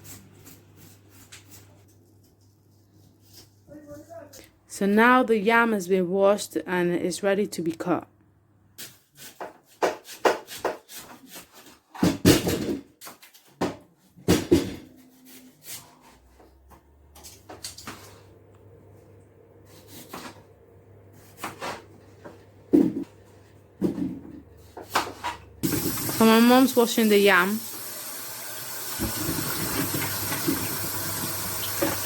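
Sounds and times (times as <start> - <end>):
knife cutting yam: 8.8 - 11.8.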